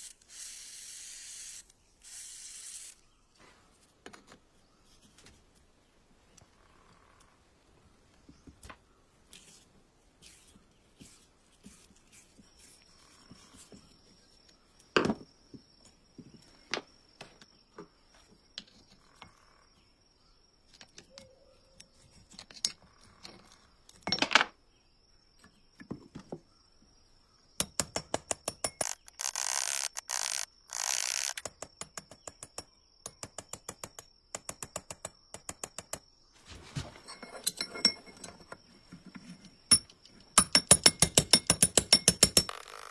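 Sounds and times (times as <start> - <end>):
short hissing bursts: 0.0 - 3.0
metal parts clicking and knocking: 27.6 - 32.6.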